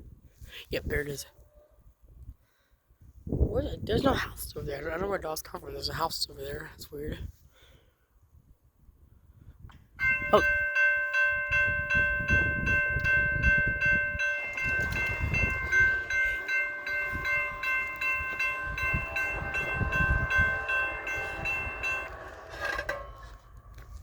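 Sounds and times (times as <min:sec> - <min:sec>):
crossing bell ringing: 0:10.0 - 0:24.0
train rumbling: 0:10.0 - 0:24.0.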